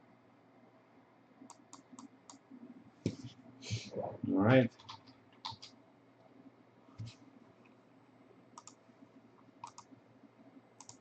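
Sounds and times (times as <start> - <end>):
computer mouse clicks: 1.5 - 2.4, 4.8 - 5.8, 8.6 - 8.8, 9.6 - 10.0, 10.8 - 11.0.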